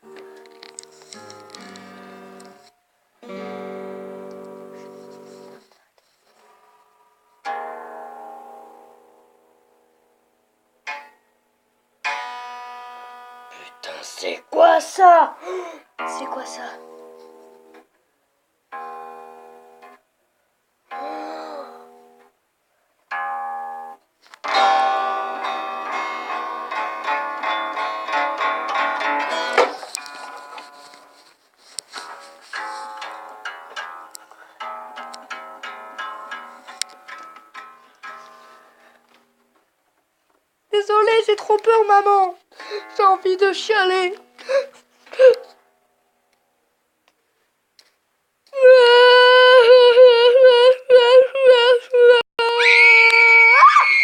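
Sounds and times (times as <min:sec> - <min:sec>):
plucked string music: 0:00.0 - 0:05.7, 0:06.3 - 0:10.0, 0:10.8 - 0:11.3, 0:12.0 - 0:17.8, 0:18.7 - 0:20.0, 0:23.1 - 0:39.4.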